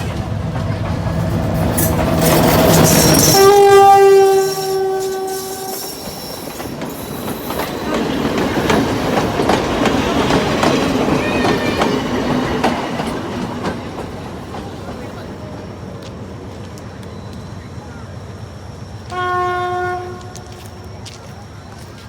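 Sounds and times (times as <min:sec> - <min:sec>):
wheels clacking over rail joints: 0:00.0 - 0:03.9, 0:04.6 - 0:17.1
train rumble: 0:00.0 - 0:22.0
train horn blast: 0:01.8 - 0:06.2, 0:19.1 - 0:20.9.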